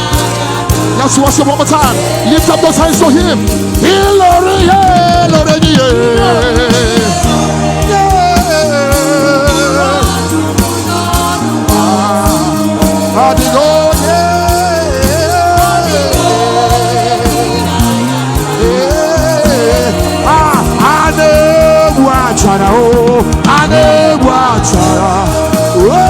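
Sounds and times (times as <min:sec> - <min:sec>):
bass: 0:00.0 - 0:26.0
drum beats: 0:00.0 - 0:26.0
gospel singers: 0:00.0 - 0:26.0.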